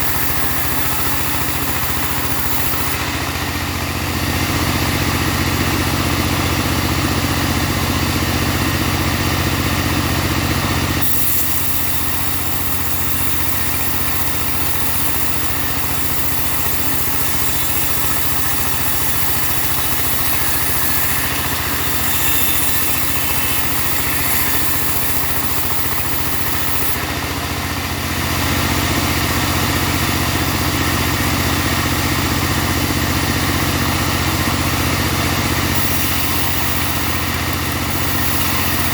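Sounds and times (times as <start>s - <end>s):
band blade cutting log hiss: 0.0s - 3.0s, 11.0s - 27.1s, 35.5s - 38.9s
portable sawmill engine running: 0.0s - 38.9s.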